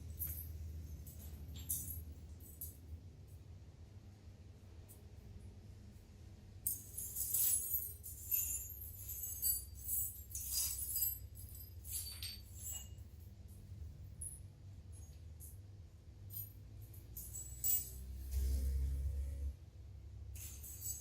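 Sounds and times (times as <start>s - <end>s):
small metal parts clinking: 0.0s - 3.0s, 6.6s - 18.9s, 20.3s - 21.0s.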